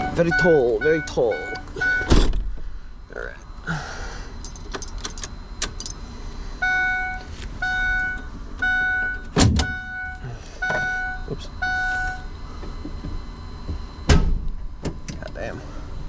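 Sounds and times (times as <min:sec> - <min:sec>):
vehicle warning chime beeping: 0:00.0 - 0:02.1, 0:03.8 - 0:14.1.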